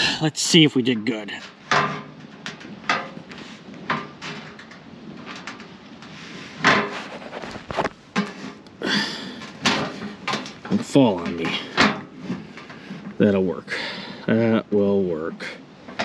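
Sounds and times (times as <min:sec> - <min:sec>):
mailbox scraping: 0:06.2 - 0:08.6.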